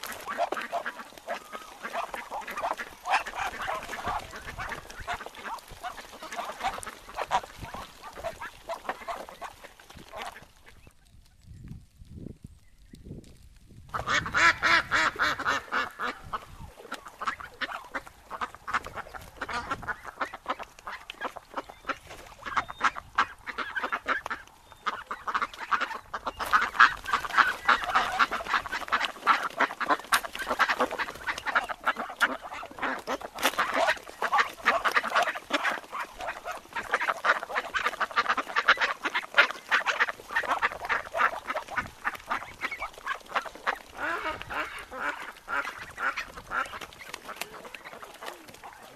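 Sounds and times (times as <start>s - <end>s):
ducks quacking: 0.0s - 10.9s, 13.9s - 48.9s.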